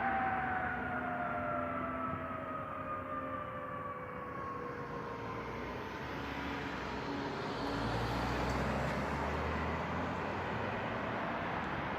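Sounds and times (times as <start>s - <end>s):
siren winding down: 0.0s - 6.0s
road traffic noise: 0.0s - 11.9s.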